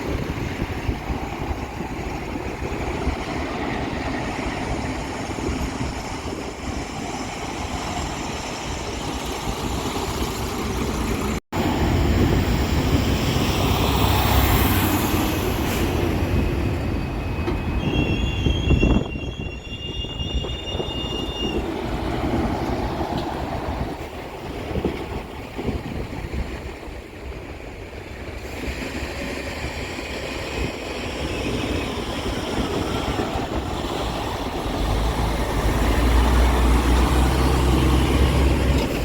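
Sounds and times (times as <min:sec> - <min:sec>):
train wheels rumbling on rail: 0:00.0 - 0:39.0
high wheel squeal: 0:02.4 - 0:23.1, 0:30.3 - 0:39.0.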